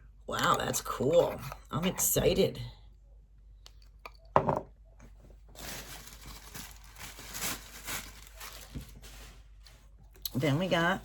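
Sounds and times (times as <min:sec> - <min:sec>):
packaging rustling and crinkling: 0:05.5 - 0:09.9.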